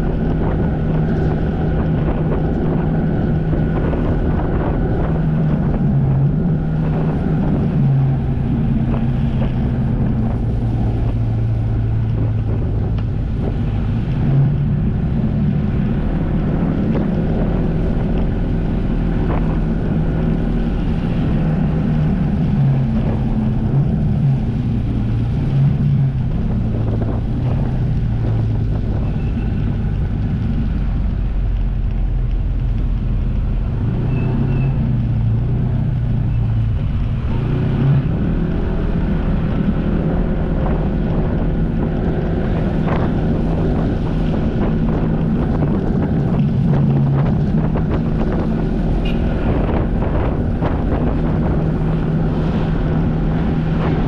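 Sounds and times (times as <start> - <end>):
jet ski engine running: 0.0 - 32.7, 33.4 - 54.0
wind buffeting microphone: 0.0 - 54.0.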